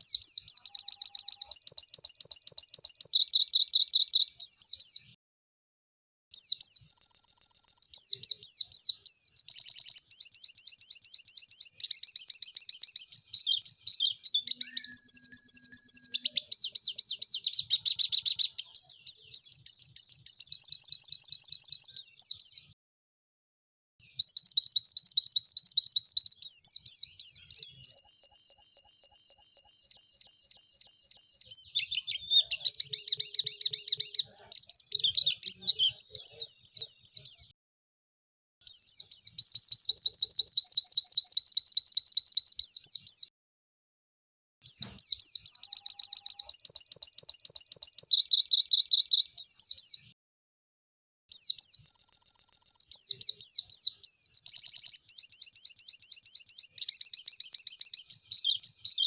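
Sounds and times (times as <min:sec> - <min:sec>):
bird trilling song: 0:00.0 - 0:05.2, 0:06.3 - 0:22.8, 0:24.0 - 0:37.6, 0:38.6 - 0:43.3, 0:44.6 - 0:50.2, 0:51.3 - 0:59.0.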